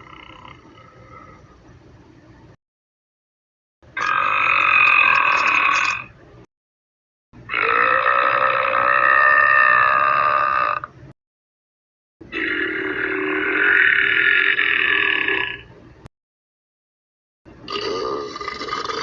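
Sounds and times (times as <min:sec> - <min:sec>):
person belching: 0:04.0 - 0:06.1, 0:07.5 - 0:10.9, 0:12.3 - 0:15.6, 0:17.7 - 0:19.0.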